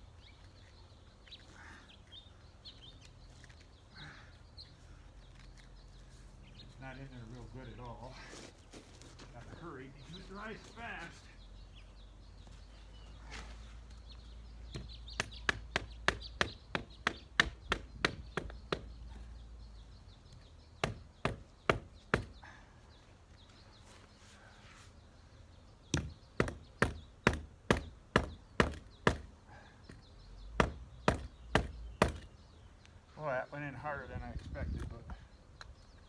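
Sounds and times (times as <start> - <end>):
sharp knocks on plastic pipe fitting: 25.9 - 29.3, 30.6 - 32.3.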